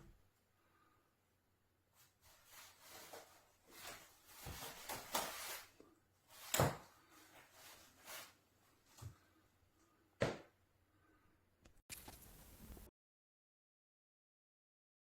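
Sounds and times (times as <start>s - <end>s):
rustling and scraping handling noises: 1.9s - 9.4s, 11.8s - 12.9s.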